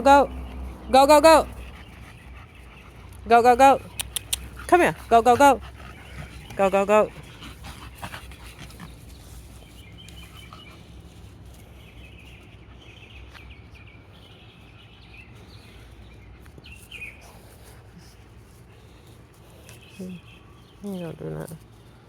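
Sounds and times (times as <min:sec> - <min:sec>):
steady low rumble: 0:00.0 - 0:16.6.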